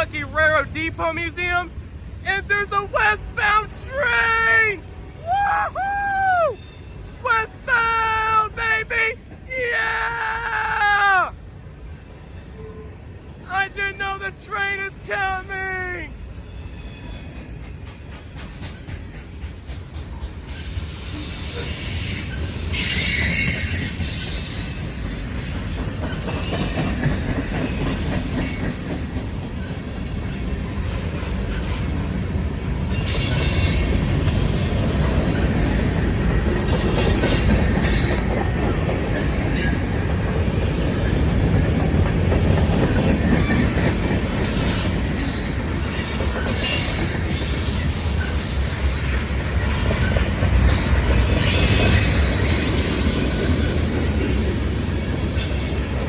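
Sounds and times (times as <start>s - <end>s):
freight train rumbling over rails: 0.0s - 56.0s
high wheel squeals: 5.6s - 7.2s, 16.4s - 18.7s, 20.5s - 29.2s, 32.9s - 38.3s, 45.2s - 54.6s.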